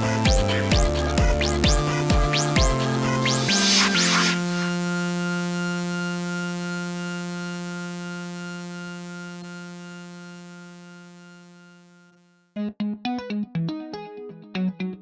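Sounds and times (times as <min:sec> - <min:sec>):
rising synth sweep: 0:00.0 - 0:05.9
held synth chord: 0:00.0 - 0:06.0.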